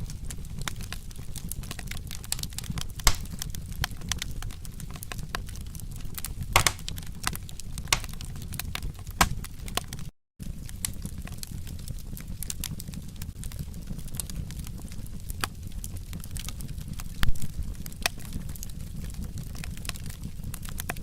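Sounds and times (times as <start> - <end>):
low rumble of flames: 0.0 - 21.0
wood fire crackling: 0.0 - 21.0.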